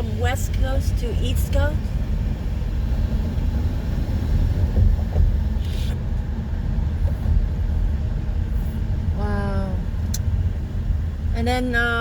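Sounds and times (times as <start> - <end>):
car road rumble: 0.0 - 12.0
short hiss: 5.6 - 6.0.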